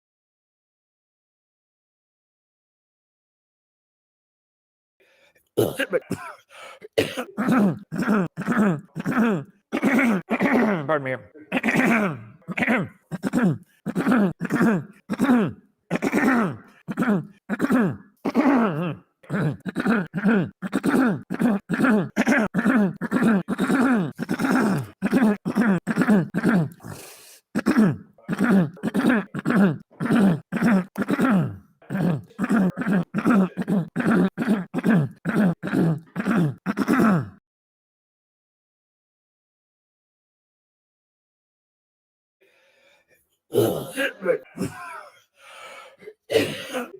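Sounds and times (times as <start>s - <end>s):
man clearing throat and coughing: 5.6s - 27.0s, 27.6s - 37.4s, 43.5s - 45.3s, 46.0s - 46.9s.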